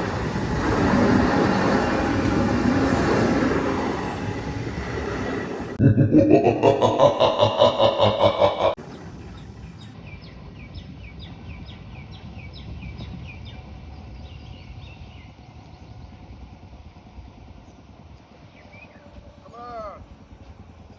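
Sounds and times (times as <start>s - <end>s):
loud passing train: 0.0s - 10.6s
steady low rumble: 4.1s - 8.8s.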